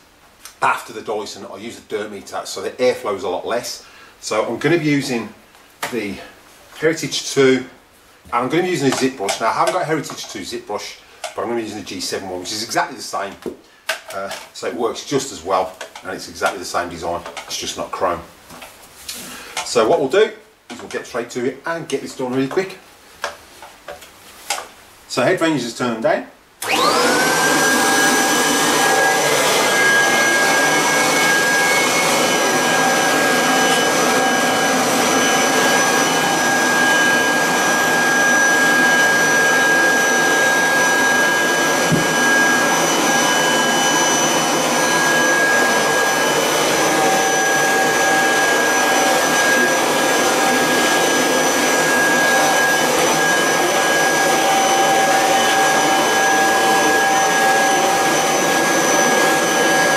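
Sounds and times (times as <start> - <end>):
vacuum cleaner motor whine: 26.6 - 59.9.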